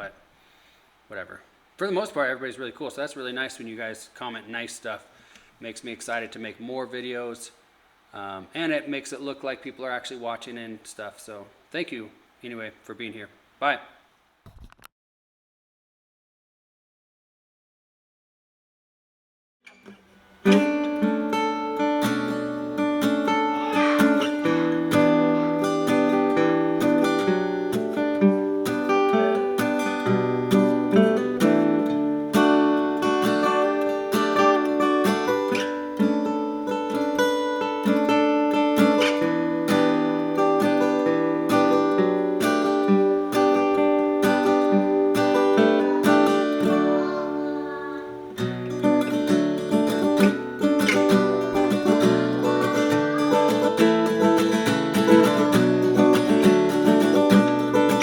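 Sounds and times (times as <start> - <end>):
acoustic guitar playing: 19.7 - 58.0.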